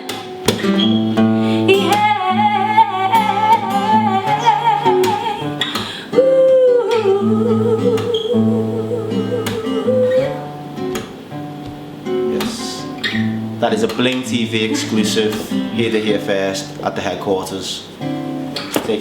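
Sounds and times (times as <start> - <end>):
acoustic guitar strumming: 0.0 - 19.0
person singing with vibrato: 1.4 - 10.5.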